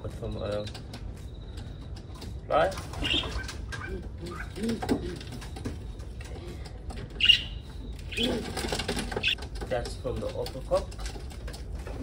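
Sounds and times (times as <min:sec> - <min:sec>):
wings flapping: 0:02.7 - 0:06.2, 0:07.0 - 0:09.6
pigeons cooing: 0:02.8 - 0:09.4.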